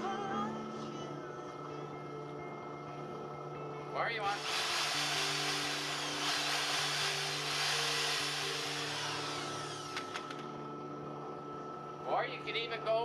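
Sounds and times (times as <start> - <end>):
generator low hum: 2.4 - 13.0
electric appliance whooshing: 4.4 - 10.5.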